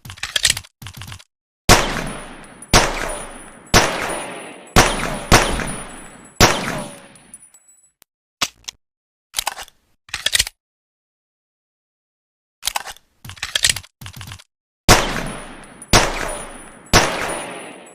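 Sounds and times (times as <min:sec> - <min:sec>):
pistol shots echoing: 0:01.7 - 0:07.3, 0:14.9 - 0:17.9.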